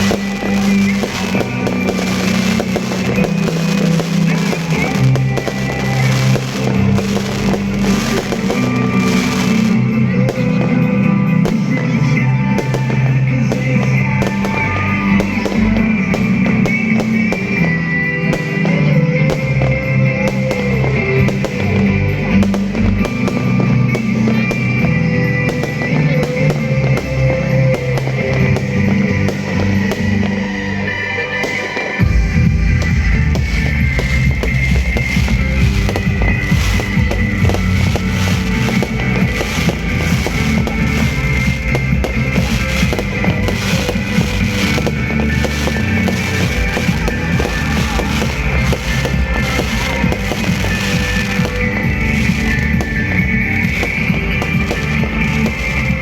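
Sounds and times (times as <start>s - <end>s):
background music: 0.0s - 56.0s
fireworks bangs: 0.0s - 56.0s.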